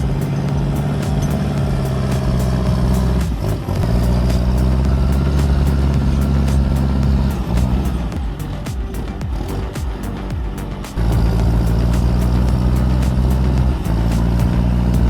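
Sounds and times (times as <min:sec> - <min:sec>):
diesel engine running under load: 0:00.0 - 0:09.6.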